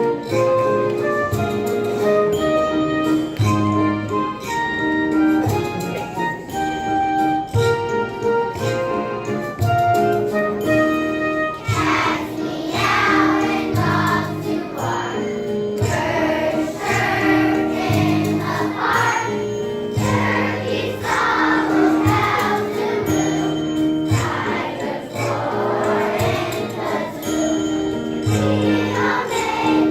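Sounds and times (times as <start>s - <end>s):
instrumental accompaniment: 0.0s - 29.9s
children's choir singing: 11.5s - 29.9s.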